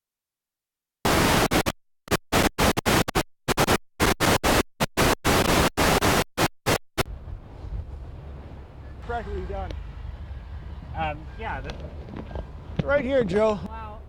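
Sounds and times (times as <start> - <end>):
static bursts: 1.0 - 7.3.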